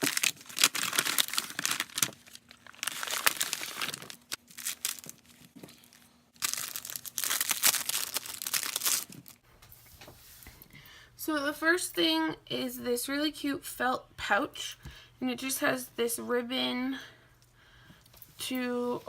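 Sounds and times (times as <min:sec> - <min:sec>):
packaging crinkling: 0:00.0 - 0:09.4.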